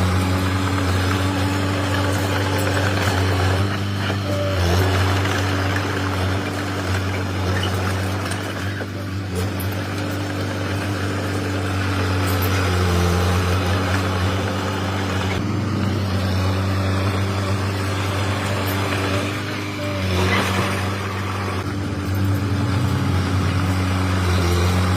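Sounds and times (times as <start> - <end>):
bulldozer diesel engine droning: 0.0 - 24.9.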